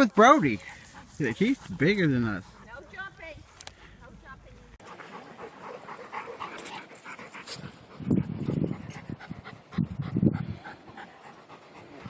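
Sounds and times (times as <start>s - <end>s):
dogs panting: 0.1s - 12.0s
dogs making rough noises: 4.8s - 12.0s.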